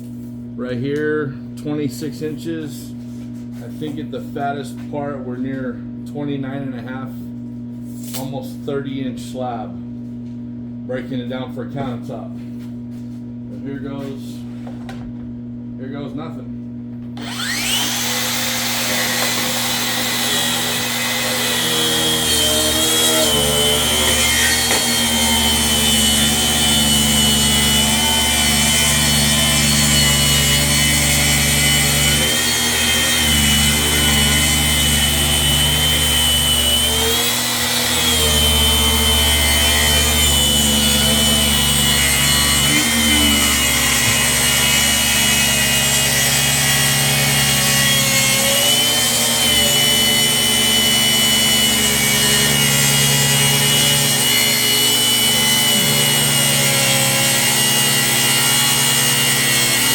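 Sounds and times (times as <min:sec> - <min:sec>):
power tool cutting wood: 0:17.2 - 0:59.9.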